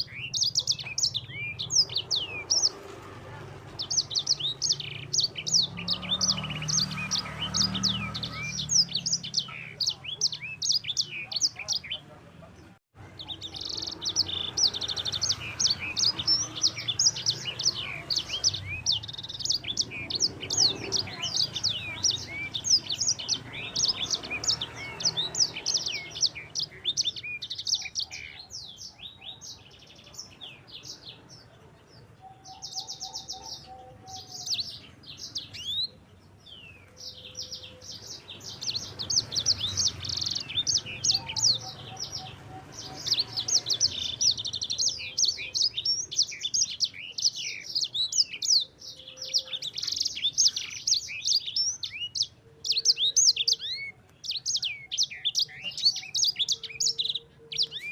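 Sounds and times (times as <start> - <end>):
songbird singing: 0.0 - 57.9.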